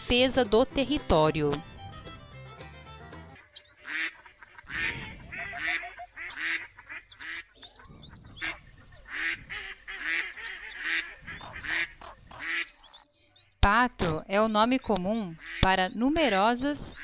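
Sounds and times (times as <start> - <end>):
ducks quacking loudly: 3.2 - 13.0, 15.3 - 17.0
soft short duck calls: 3.4 - 12.7.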